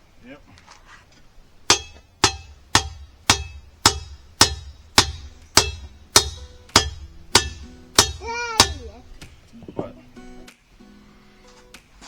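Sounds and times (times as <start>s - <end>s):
hammer blows on steel tube: 1.6s - 9.6s.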